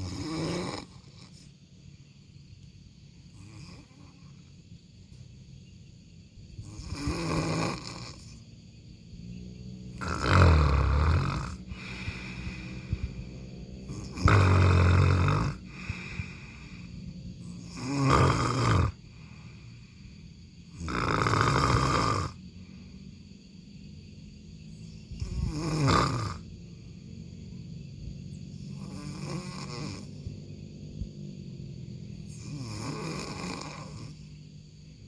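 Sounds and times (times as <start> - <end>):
person snoring: 0.0 - 1.5, 6.6 - 8.4, 9.9 - 19.7, 20.7 - 22.4, 25.2 - 26.4, 28.6 - 30.2, 32.3 - 34.3
quiet breathing: 0.0 - 35.0.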